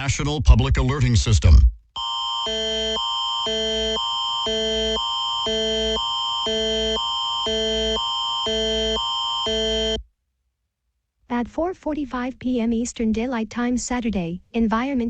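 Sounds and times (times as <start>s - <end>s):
alternating alert chords: 2.0s - 10.0s
steady high tone: 2.0s - 10.0s.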